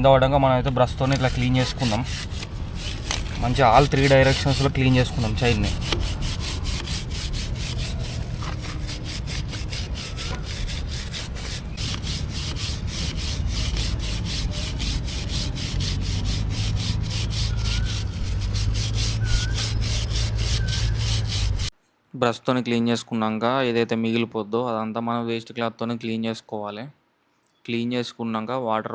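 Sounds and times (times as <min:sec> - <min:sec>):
brush scrubbing a chain: 0:01.0 - 0:21.7.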